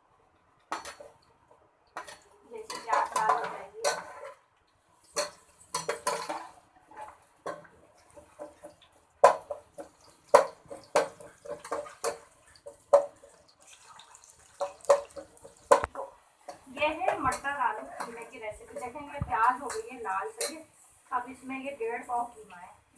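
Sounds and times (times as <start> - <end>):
metal spoon scraping cooking pot: 2.0 - 4.4, 5.1 - 13.4.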